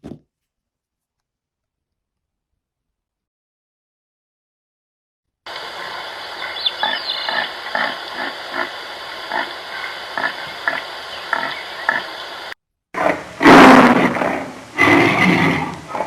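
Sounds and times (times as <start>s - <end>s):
steady background hiss: 5.5s - 16.0s
pig grunting: 6.8s - 12.1s, 13.0s - 16.0s
loud animal roar: 13.0s - 16.0s.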